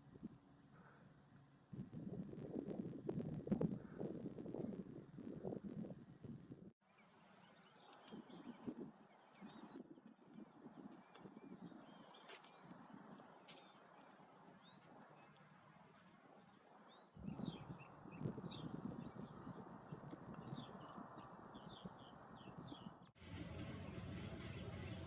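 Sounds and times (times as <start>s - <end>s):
low hiss: 23.2s - 25.0s.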